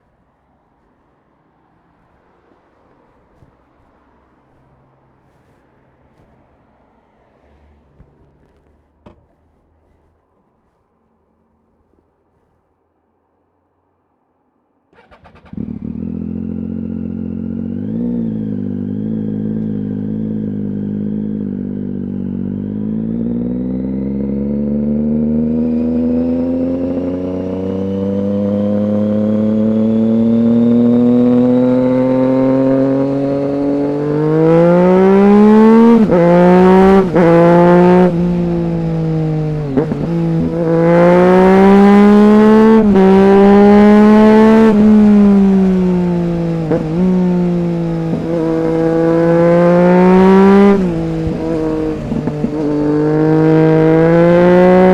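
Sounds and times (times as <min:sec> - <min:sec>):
motorcycle engine revving: 0:15.0 - 0:54.9.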